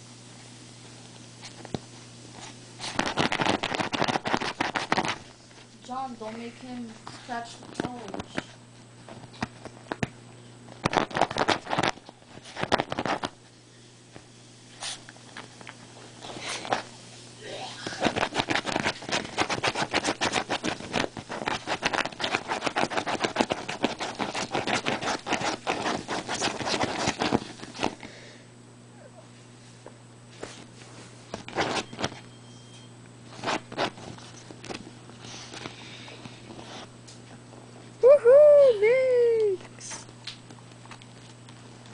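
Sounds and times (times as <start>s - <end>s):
dog scratching at cushions: 2.3s - 5.3s, 10.8s - 13.4s, 18.0s - 28.0s, 31.3s - 32.2s, 33.3s - 35.7s.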